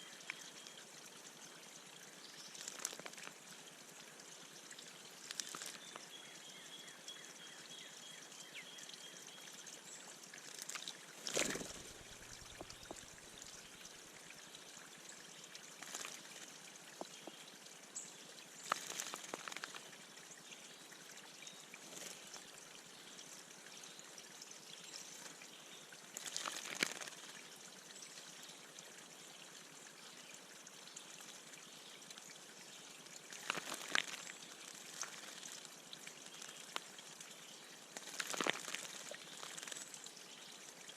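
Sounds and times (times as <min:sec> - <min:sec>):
birds splashing wings in water: 0:02.5 - 0:03.3, 0:05.2 - 0:05.8, 0:10.4 - 0:13.6, 0:15.8 - 0:16.4, 0:18.6 - 0:19.8, 0:26.2 - 0:27.3, 0:33.3 - 0:36.8, 0:38.0 - 0:39.8.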